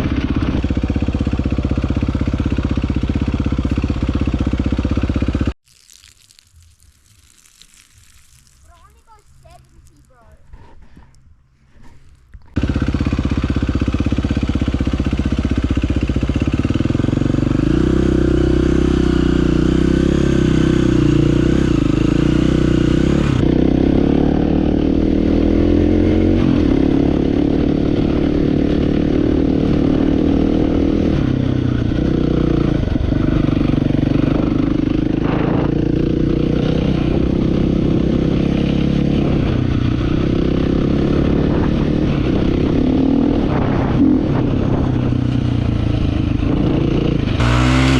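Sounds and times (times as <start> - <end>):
dirt bike engine revving: 12.5 - 47.9.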